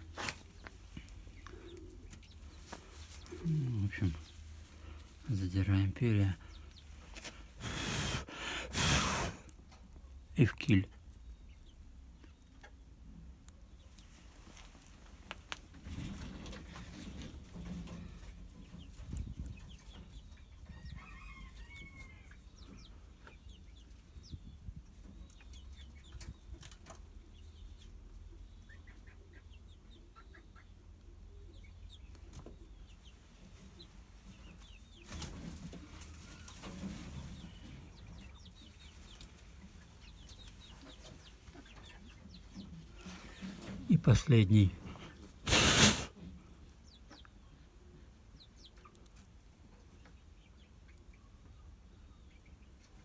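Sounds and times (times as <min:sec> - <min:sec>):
rustling: 0:00.0 - 0:05.3.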